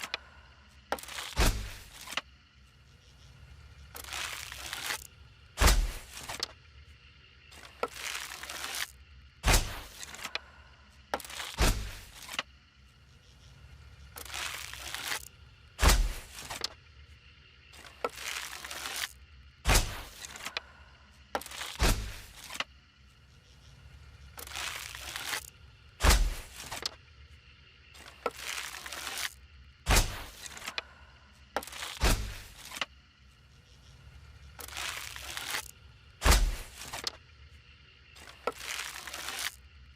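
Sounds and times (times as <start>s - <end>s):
arrow shot whoosh and crack: 9.4s - 9.9s, 15.8s - 16.2s, 19.7s - 20.1s, 26.0s - 26.5s, 29.9s - 30.4s, 36.2s - 36.7s.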